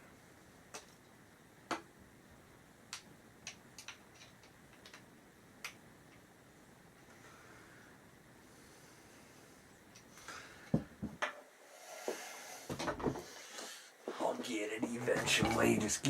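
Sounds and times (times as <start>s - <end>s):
hardware parts clicking and tapping: 2.9s - 6.3s.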